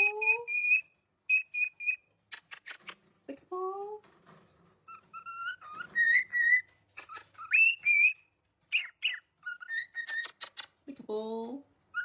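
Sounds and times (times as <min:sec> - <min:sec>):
sharp clicks: 0:02.3 - 0:03.0
parrot whistling: 0:05.1 - 0:10.6.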